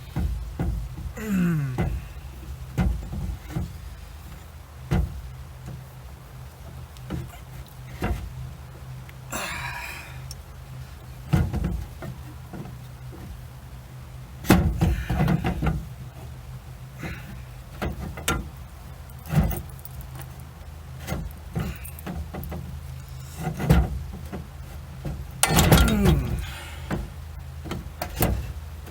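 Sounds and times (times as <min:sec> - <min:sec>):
scraping rustle: 0:00.0 - 0:28.9
steady low hum: 0:00.0 - 0:28.9
metallic clinks and knocks: 0:19.0 - 0:20.5.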